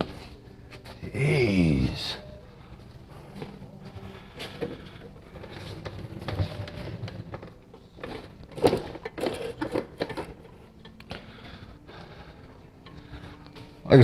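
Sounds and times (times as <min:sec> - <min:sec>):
parts knocking and rattling: 0:05.4 - 0:11.0.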